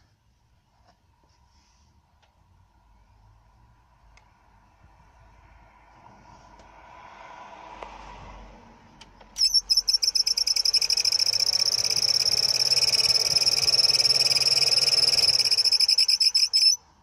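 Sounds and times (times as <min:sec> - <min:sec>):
blower motor squeal: 0:09.4 - 0:16.8
blower motor hum: 0:09.5 - 0:16.8.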